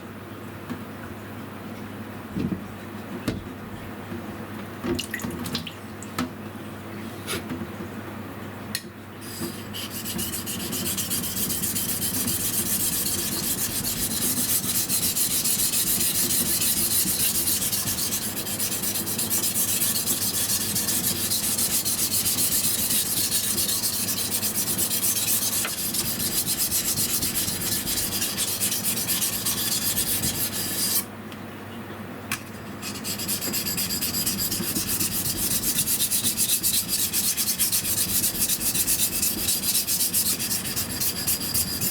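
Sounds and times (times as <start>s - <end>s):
knife rasping on whetstone: 9.3s - 31.1s, 32.8s - 41.9s.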